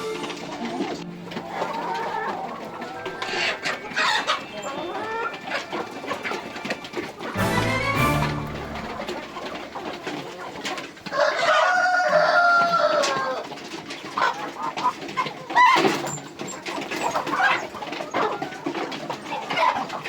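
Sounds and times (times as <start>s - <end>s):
chickens clucking: 0.0s - 20.0s
rooster crowing: 11.1s - 13.3s.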